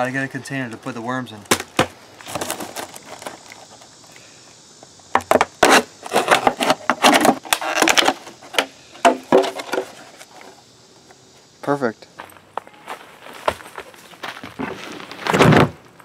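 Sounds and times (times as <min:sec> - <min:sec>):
objects clattering and rustling: 0:01.5 - 0:03.9, 0:05.2 - 0:10.6.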